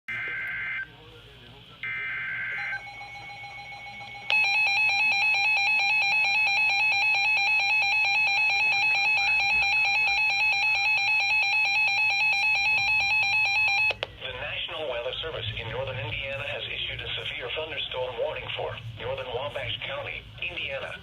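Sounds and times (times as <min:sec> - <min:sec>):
two-tone alert tone: 0:01.8 - 0:14.0.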